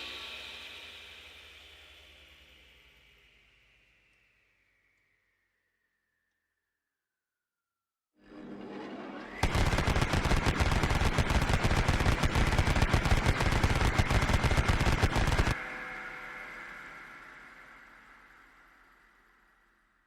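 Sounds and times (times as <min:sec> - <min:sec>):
rotary cannon firing: 0:09.4 - 0:15.6
high whine: 0:09.4 - 0:18.9.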